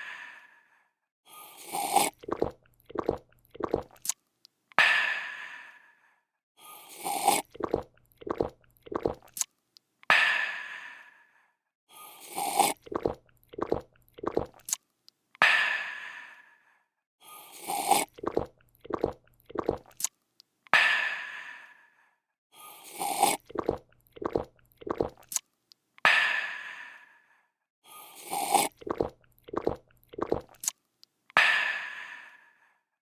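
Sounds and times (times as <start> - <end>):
person slurping a drink: 1.4 - 4.2, 6.8 - 9.4, 12.1 - 14.8, 17.4 - 20.1, 22.6 - 25.4, 28.0 - 30.8
person gulping: 1.7 - 4.1, 7.1 - 9.4, 12.4 - 14.7, 17.7 - 20.1, 22.9 - 25.4, 28.3 - 30.7.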